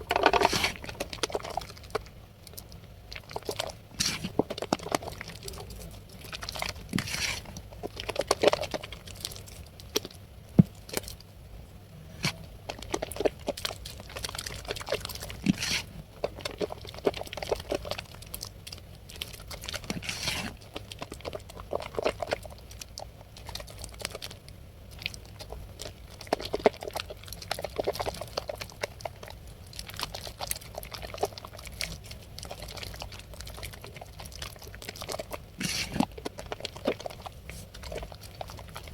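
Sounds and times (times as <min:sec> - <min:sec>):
soap lathering with water: 0:12.6 - 0:38.9.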